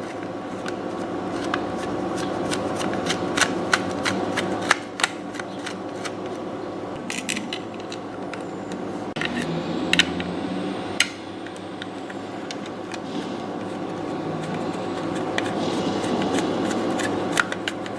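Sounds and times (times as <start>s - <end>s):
steady background hum: 0.0s - 17.9s.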